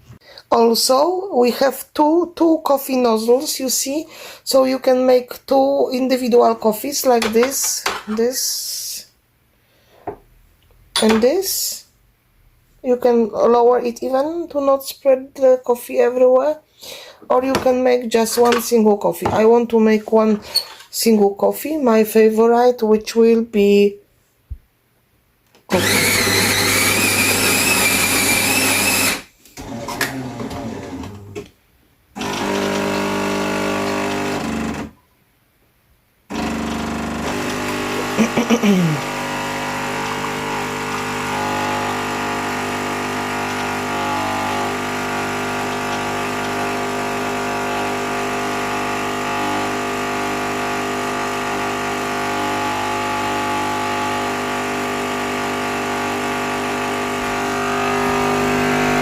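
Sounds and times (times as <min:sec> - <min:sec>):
coffee grinder grinding beans: 0:25.7 - 0:31.3, 0:32.2 - 0:34.7, 0:36.3 - 0:59.0
pump humming: 0:36.3 - 0:59.0
coffee machine brewing mechanism: 0:36.4 - 0:38.4, 0:39.0 - 0:53.2.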